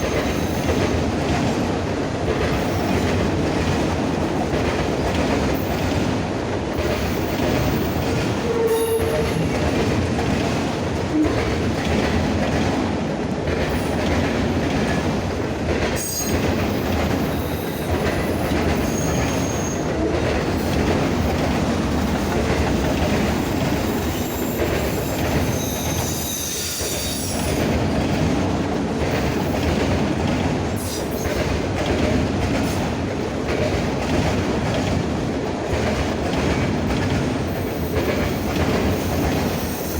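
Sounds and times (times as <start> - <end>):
train wheels clacking over rail joints: 0.0 - 39.9.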